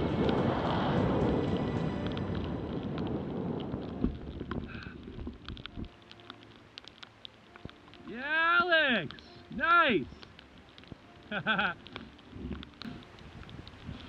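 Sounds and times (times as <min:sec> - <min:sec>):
wind noise on microphone: 0:00.0 - 0:06.0, 0:12.3 - 0:14.0
small clicks: 0:03.0 - 0:08.1, 0:09.0 - 0:14.0.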